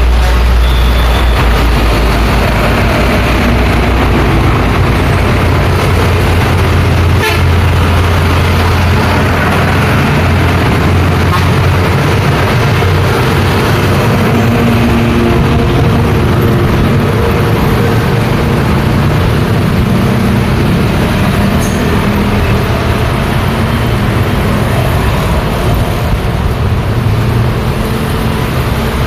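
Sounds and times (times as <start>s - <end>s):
traffic engines rumbling: 0.0s - 29.0s
vehicle horn toot: 7.2s - 7.5s.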